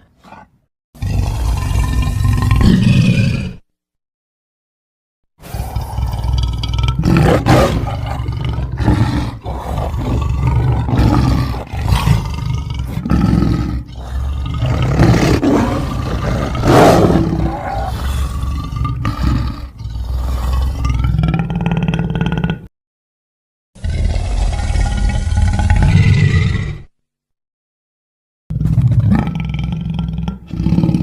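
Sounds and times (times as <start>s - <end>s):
monster growling: 5.4s - 22.7s, 23.8s - 26.9s
monster roars: 5.4s - 22.7s, 23.8s - 26.9s.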